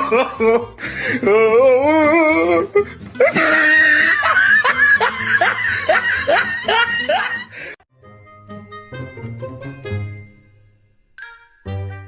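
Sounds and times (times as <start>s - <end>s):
person laughing hard: 0.0s - 1.4s, 3.2s - 7.8s.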